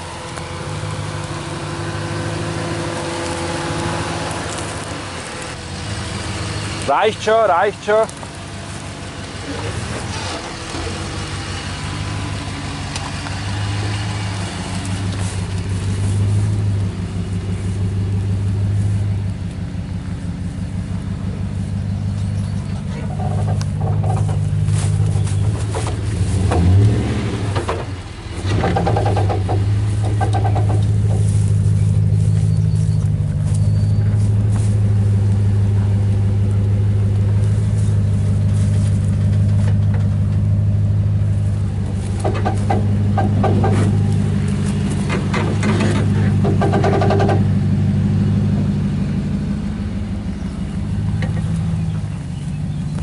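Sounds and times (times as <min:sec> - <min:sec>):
engine rumbling: 0:00.0 - 0:53.0
knocks and clatter: 0:22.7 - 0:34.8, 0:37.2 - 0:47.8.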